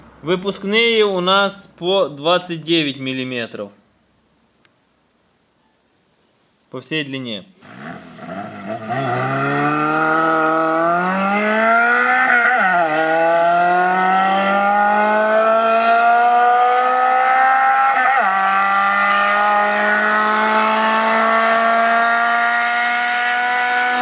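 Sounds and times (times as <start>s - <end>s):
car engine accelerating hard: 7.6s - 24.0s.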